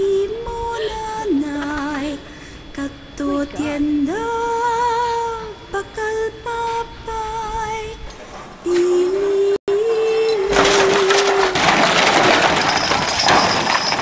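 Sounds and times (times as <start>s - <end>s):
high voice singing: 2.8s - 11.8s.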